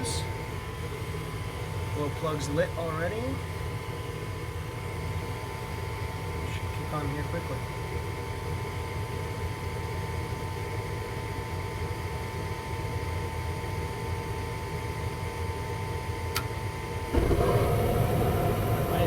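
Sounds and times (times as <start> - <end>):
furnace motor whining: 17.0 - 19.0
burners lighting with a rush: 17.1 - 19.0.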